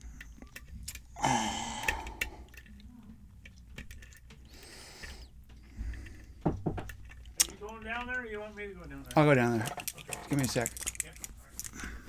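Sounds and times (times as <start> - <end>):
lock pick clicking in lock: 3.4 - 5.1.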